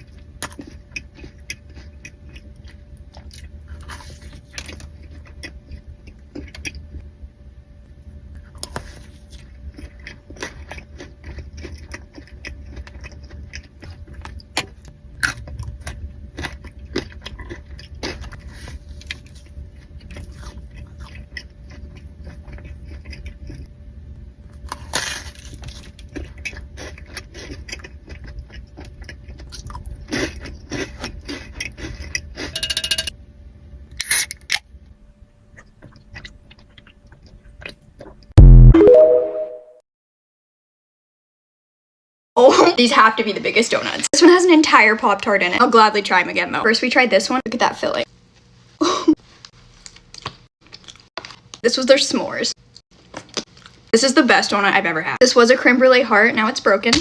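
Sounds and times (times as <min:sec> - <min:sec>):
chewing and biting: 0:00.0 - 0:07.0, 0:08.4 - 0:23.7, 0:24.6 - 0:32.5, 0:35.5 - 0:38.3
low steady hum: 0:00.0 - 0:39.6.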